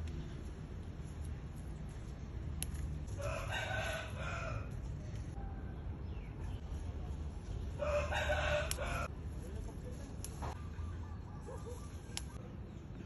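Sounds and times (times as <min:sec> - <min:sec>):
rooster crowing: 0:03.2 - 0:04.8, 0:07.8 - 0:09.1.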